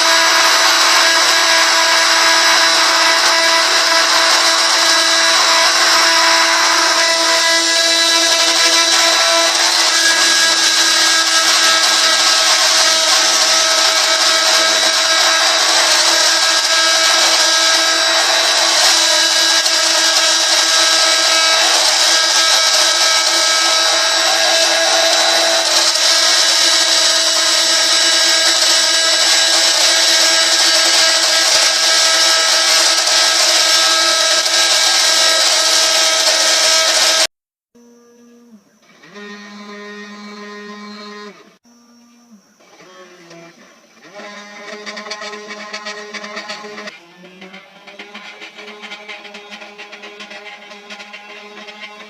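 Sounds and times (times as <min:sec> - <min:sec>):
hiss of wood cutting: 0:00.0 - 0:37.3
router spindle whine: 0:00.0 - 0:52.0.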